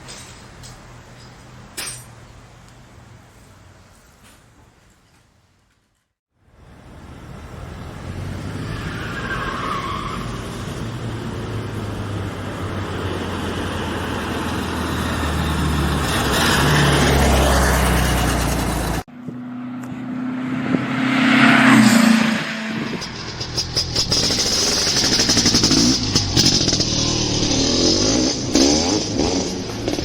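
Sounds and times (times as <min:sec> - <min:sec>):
second engine: 0:06.5 - 0:30.0
motor vehicle engine running: 0:06.6 - 0:21.1, 0:22.5 - 0:30.0.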